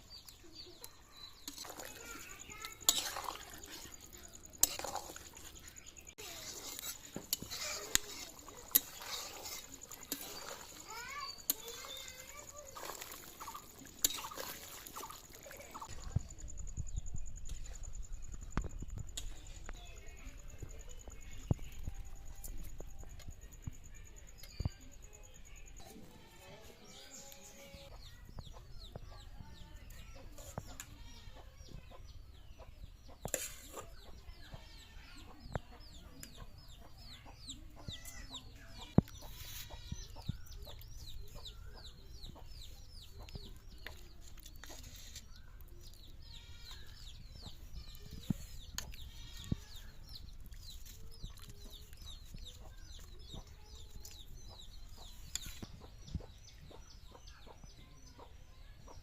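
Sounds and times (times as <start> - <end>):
chickens clucking: 27.7 - 45.2.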